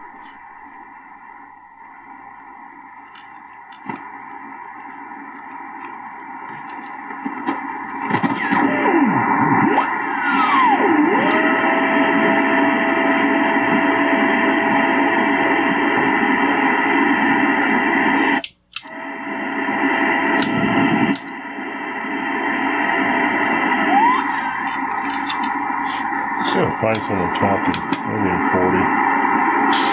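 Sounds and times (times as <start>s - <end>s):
radio hiss and static: 0.0s - 29.9s
sharp clicks: 18.4s - 19.0s, 23.9s - 28.1s
heterodyne whistle: 23.8s - 26.0s.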